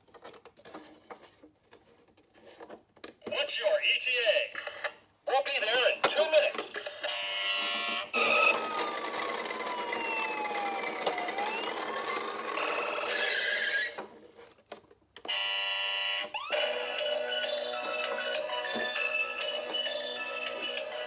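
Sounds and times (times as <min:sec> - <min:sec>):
toy siren wail: 0:07.2 - 0:14.0, 0:15.3 - 0:21.0.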